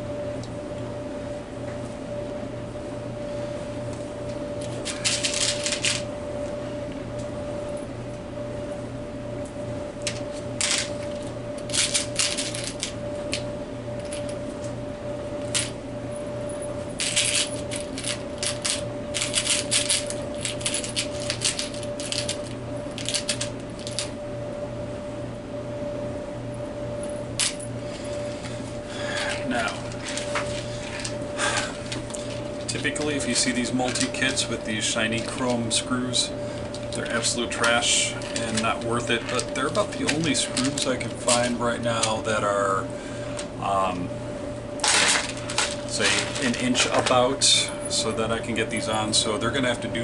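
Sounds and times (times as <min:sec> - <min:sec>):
steady hum: 0:00.0 - 0:50.0.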